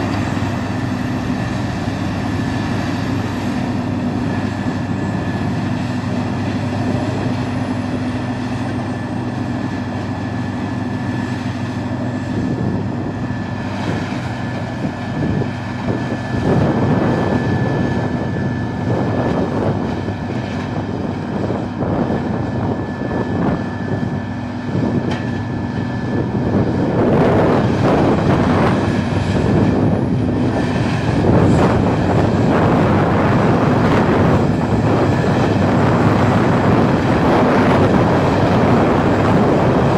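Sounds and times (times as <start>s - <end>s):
high whine: 0.0s - 39.9s
wood chipper engine drone: 0.0s - 39.9s.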